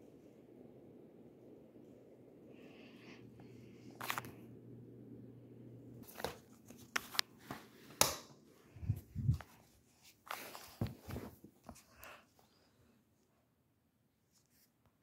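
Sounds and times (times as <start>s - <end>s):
ceiling fan motor humming: 0.0s - 9.7s.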